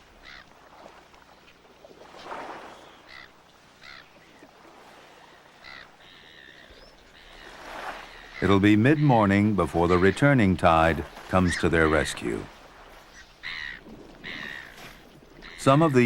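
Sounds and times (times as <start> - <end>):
faint bird calls: 0.1 - 1.5, 2.1 - 16.0.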